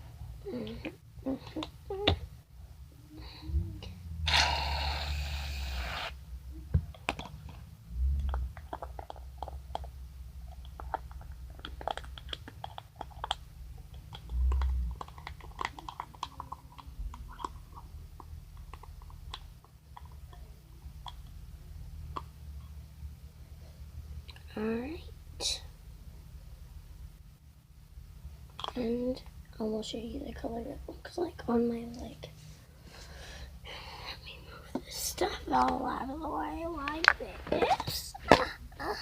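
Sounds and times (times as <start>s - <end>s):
loud hiss: 4.2s - 6.2s.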